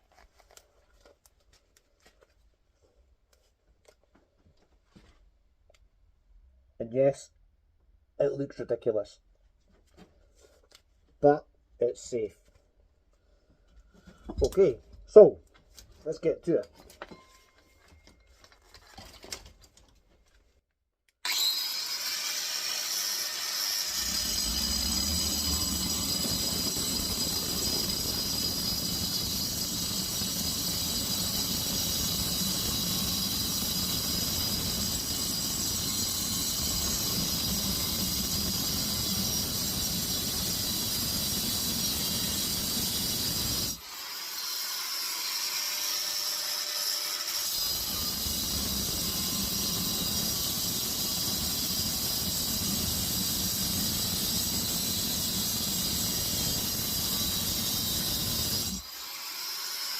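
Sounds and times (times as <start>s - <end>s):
power tool cutting steel: 21.2s - 59.9s.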